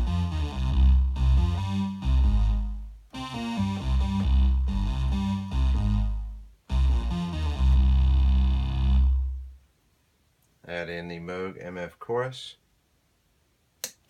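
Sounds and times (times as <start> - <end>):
synthesizer bass line: 0.0 - 9.6.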